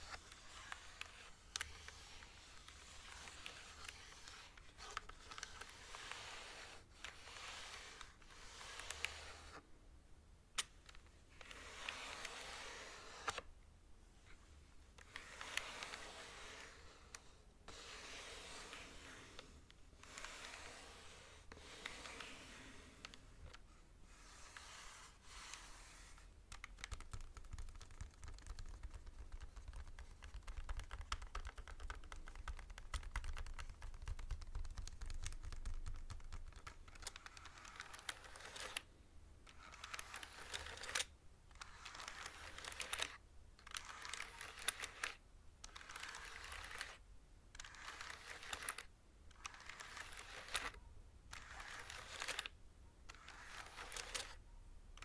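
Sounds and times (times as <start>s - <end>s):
fast keyboard typing: 26.5s - 38.7s.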